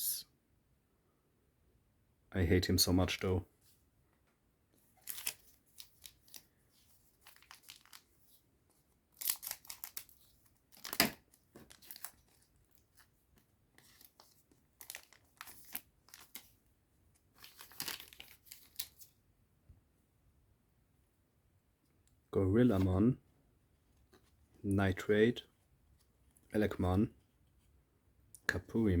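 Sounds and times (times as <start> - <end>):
wrapper tearing and crinkling: 5.0 - 6.5, 7.2 - 8.1, 9.1 - 13.1, 13.8 - 16.5, 17.4 - 19.1.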